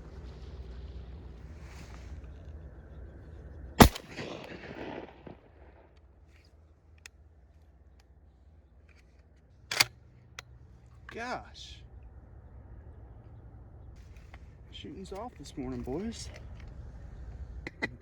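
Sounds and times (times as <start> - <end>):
shotgun blasts: 3.8 - 5.8.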